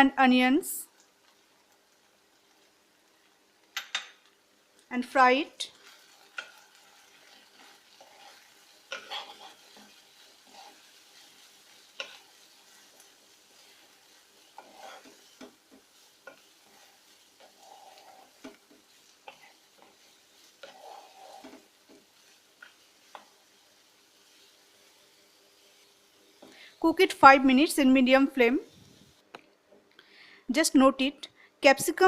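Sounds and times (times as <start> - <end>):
vegetables sizzling in a pan: 0.0 - 29.2
spatula scraping and knocking pan: 5.8 - 23.4.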